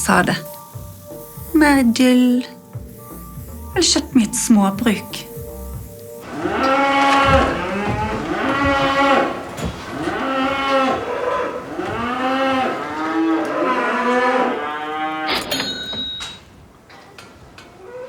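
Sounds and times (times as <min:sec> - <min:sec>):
cow mooing: 0:06.2 - 0:15.5.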